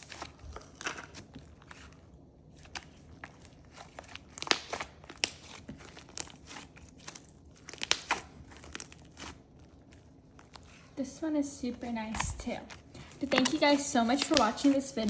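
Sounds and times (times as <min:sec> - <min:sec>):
slime squished by hand: 0:00.0 - 0:11.0.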